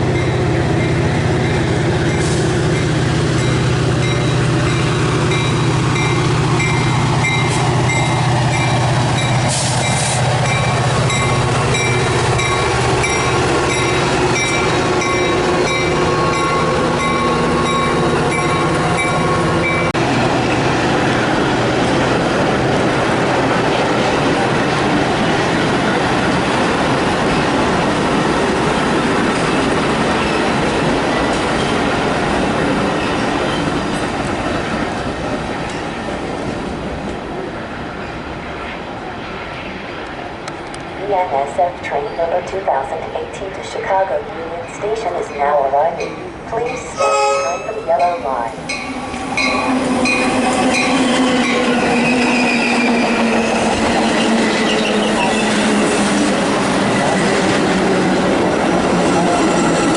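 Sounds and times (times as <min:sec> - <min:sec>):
diesel locomotive engine hum: 0:00.0 - 0:59.9
bell ringing: 0:46.0 - 0:50.2
train wheel squeal: 0:48.7 - 0:56.0, 0:59.1 - 0:59.9.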